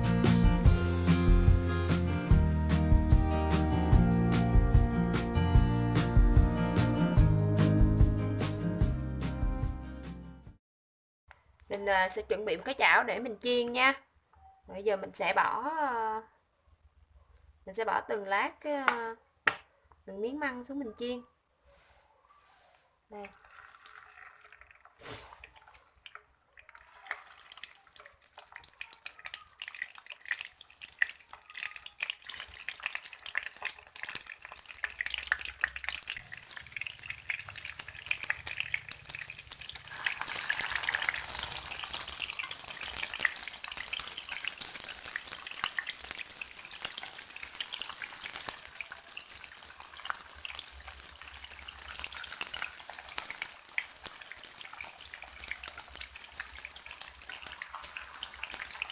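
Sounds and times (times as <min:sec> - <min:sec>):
food sizzling in hot oil: 0:23.2 - 0:25.9, 0:26.7 - 0:58.9.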